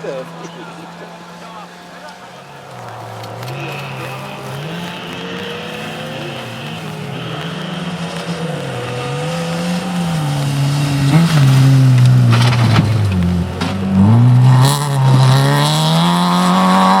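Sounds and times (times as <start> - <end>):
rally car engine revving: 0.0 - 17.0.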